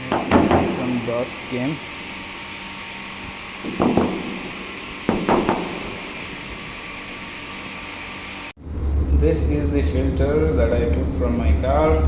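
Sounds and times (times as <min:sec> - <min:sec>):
knocking and rattling of air filter: 0:00.0 - 0:01.1, 0:03.6 - 0:06.7
steady hiss: 0:00.0 - 0:08.5.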